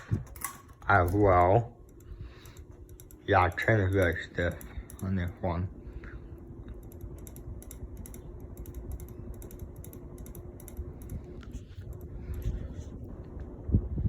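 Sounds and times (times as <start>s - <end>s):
ceiling fan motor hum: 0.0s - 14.0s
light rapid clicks: 0.2s - 5.4s, 6.6s - 12.6s.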